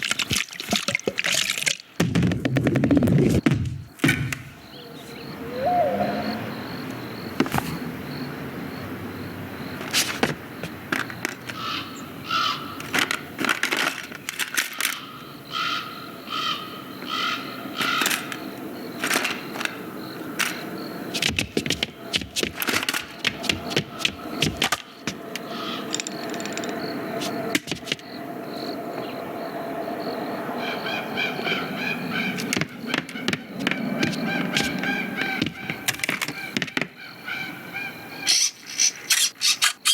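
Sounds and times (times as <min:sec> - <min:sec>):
sharp knocks and clatters: 0:00.2 - 0:04.5.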